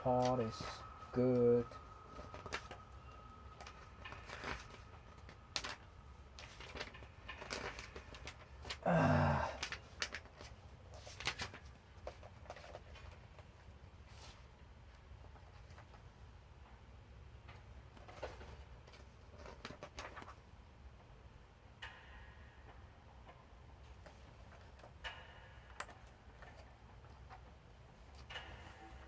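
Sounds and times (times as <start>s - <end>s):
short low vocal sound: 8.8s - 9.6s.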